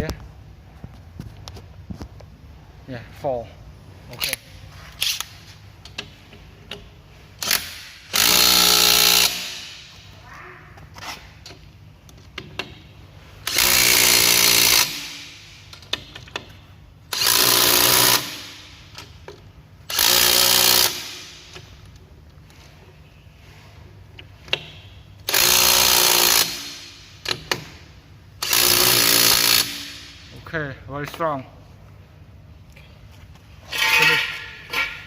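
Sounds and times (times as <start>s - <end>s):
impact wrench hammering: 5.9s - 10.2s, 13.4s - 21.8s, 24.4s - 27.8s, 28.4s - 30.3s.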